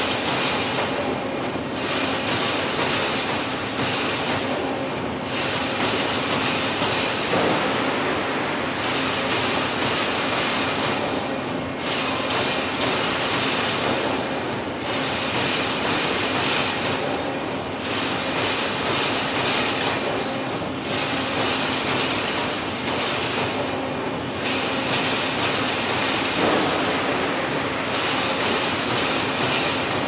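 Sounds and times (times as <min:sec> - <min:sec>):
wire fence-making machine running: 0:00.0 - 0:30.0.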